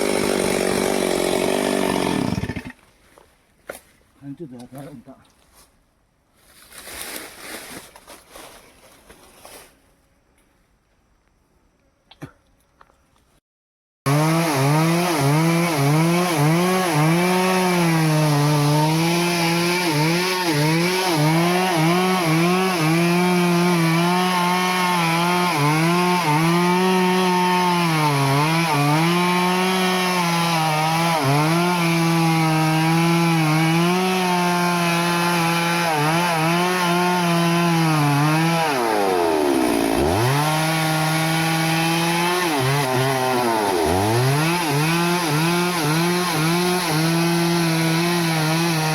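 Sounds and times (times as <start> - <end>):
chainsaw cutting wood: 0.0 - 2.8, 14.1 - 48.9.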